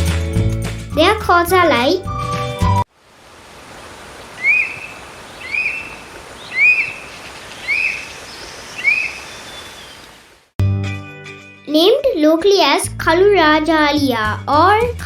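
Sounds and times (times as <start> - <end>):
steady hiss: 2.9 - 10.5
eagle calling high notes: 3.8 - 10.2.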